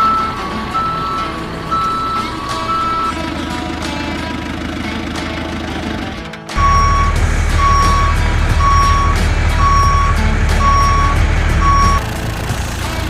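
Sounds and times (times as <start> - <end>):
truck reversing alarm beeping: 0.0 - 4.0, 6.6 - 12.1
low engine rumble: 0.0 - 13.0.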